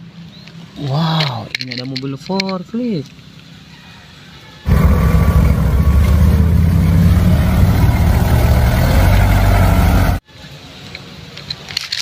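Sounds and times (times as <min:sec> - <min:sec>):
engine running with deep hum: 0:04.7 - 0:10.2.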